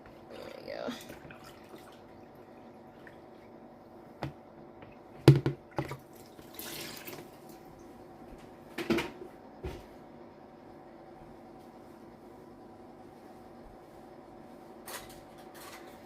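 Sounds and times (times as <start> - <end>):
objects knocking and clattering: 5.2 - 6.0.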